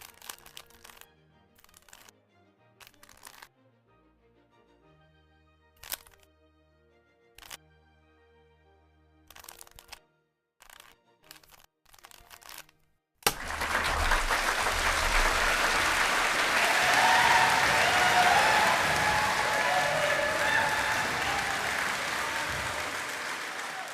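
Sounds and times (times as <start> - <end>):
crowd applauding and cheering: 13.3 - 23.9
whistles: 13.4 - 23.9.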